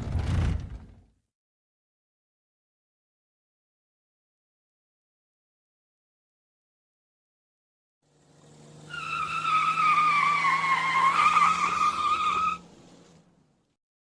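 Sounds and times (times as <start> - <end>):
car tyres squealing: 8.3 - 13.2.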